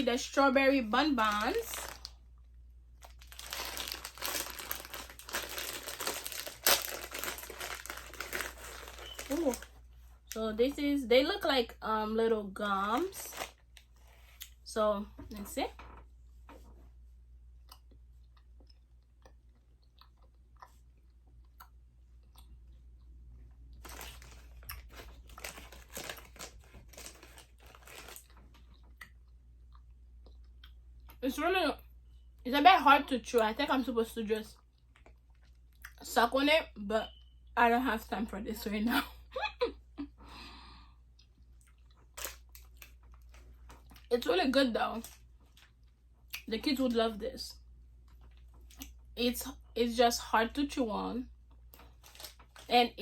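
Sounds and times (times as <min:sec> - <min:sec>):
snack wrapper crinkling: 0:01.2 - 0:02.2, 0:03.0 - 0:09.8, 0:12.9 - 0:13.9, 0:23.8 - 0:28.7, 0:41.7 - 0:44.1, 0:51.5 - 0:52.7
person chewing candy: 0:01.8 - 0:10.4, 0:17.6 - 0:31.2, 0:41.1 - 0:44.1.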